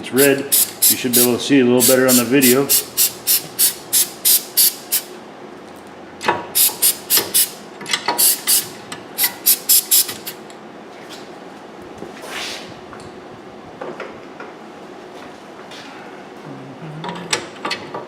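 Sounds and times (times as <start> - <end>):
aerosol can spraying: 0.5 - 5.1.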